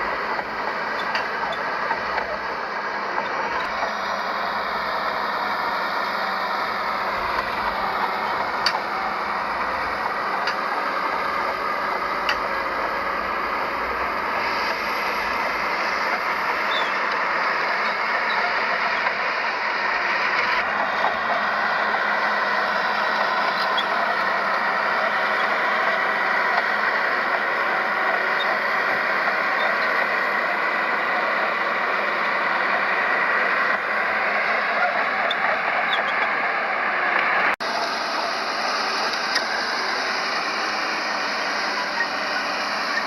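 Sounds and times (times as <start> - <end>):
diesel earthmoving machinery running: 0.0 - 43.0.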